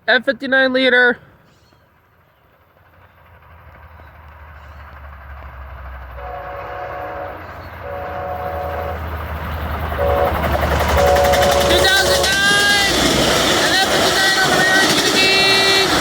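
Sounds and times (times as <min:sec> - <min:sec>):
locomotive engine and wheels rumbling: 0:00.0 - 0:16.0
locomotive air horn blasts: 0:06.2 - 0:09.1, 0:10.0 - 0:12.5.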